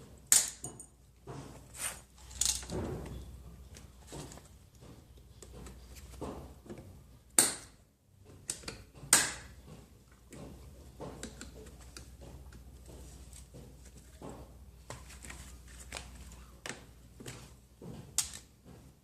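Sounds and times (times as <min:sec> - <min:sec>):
metal tools clinking: 0:02.2 - 0:03.3.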